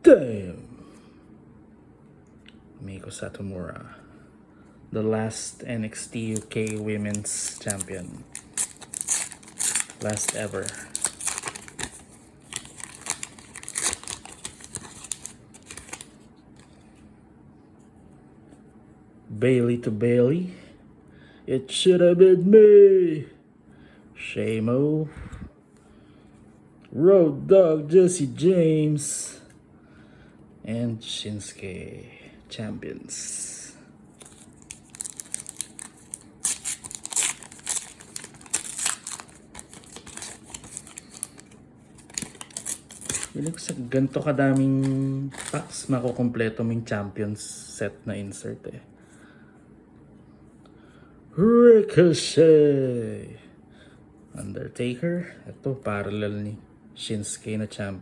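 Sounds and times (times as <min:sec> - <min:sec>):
card wrapper crinkling: 0:06.0 - 0:16.9, 0:34.1 - 0:46.2.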